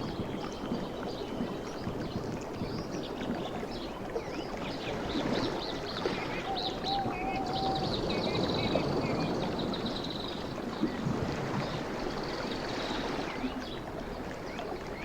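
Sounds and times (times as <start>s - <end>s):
waves lapping at shore: 4.2s - 15.0s.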